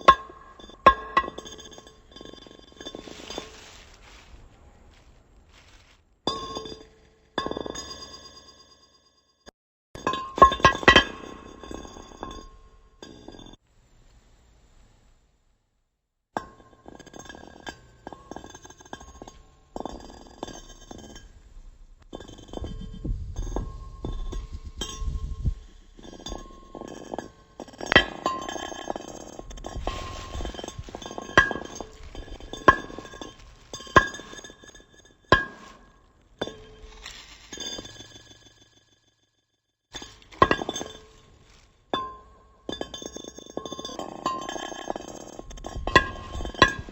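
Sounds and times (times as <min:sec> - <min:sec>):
glass objects clinking and ringing: 0:00.0 - 0:04.0, 0:10.0 - 0:13.6, 0:22.2 - 0:39.2, 0:39.9 - 0:46.9
low rumbling: 0:20.6 - 0:34.6, 0:45.4 - 0:46.9.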